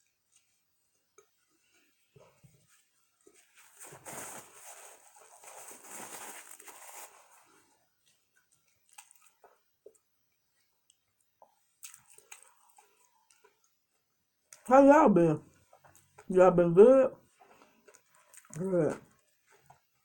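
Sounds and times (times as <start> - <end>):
chewing: 8.0 - 10.1, 10.8 - 13.8, 17.4 - 19.8
food crunching: 8.3 - 10.1, 10.9 - 13.7, 17.4 - 19.8.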